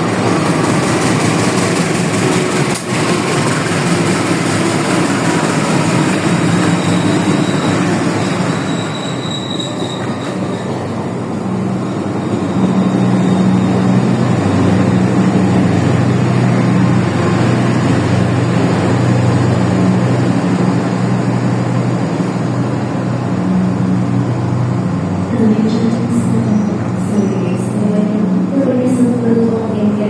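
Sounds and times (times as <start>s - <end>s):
locomotive engine drone: 0.0s - 30.0s
wheel and rail noise: 0.0s - 30.0s
high wheel squeal: 5.8s - 11.2s, 11.9s - 14.7s.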